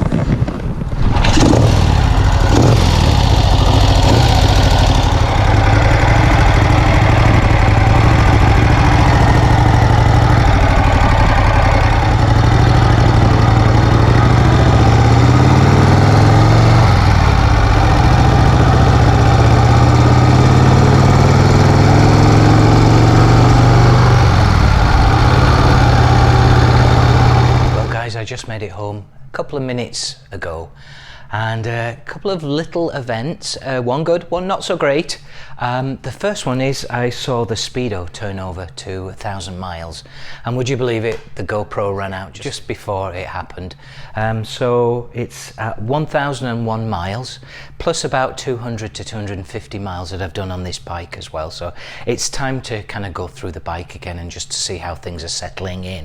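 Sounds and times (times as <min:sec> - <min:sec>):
motorcycle engine accelerating: 0:00.8 - 0:28.0.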